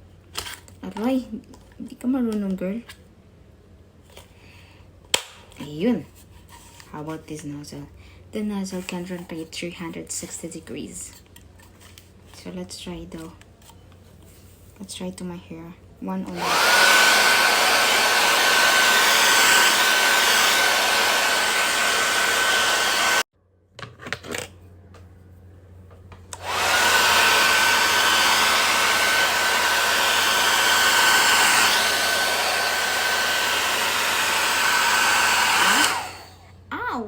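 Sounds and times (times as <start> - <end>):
hair dryer blowing: 16.3 - 23.3, 26.3 - 36.5.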